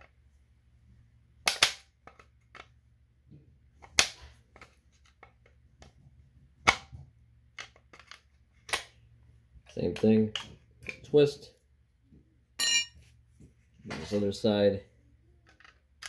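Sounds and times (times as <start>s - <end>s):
pry bar snapping plastic parts: 1.4s - 2.7s.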